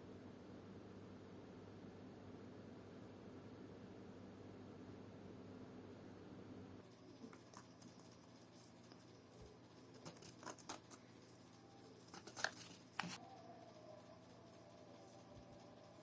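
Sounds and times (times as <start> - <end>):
small tools clicking and tapping: 12.0 - 13.2.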